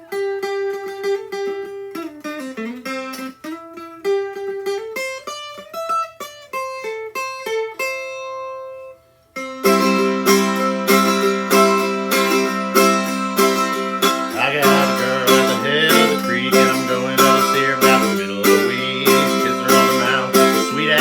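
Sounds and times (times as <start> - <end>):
picked string melody: 0.0 - 21.0
strummed string chords: 9.4 - 21.0.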